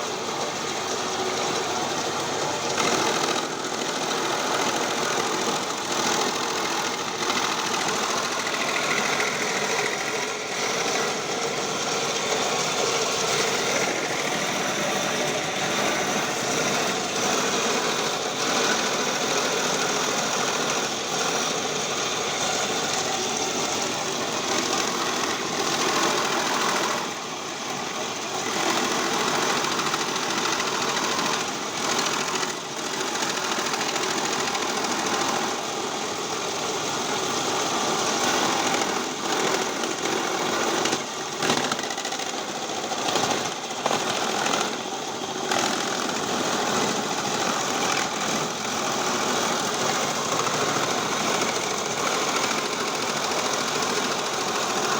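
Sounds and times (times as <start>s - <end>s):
shredding machine clattering: 0.0s - 54.9s.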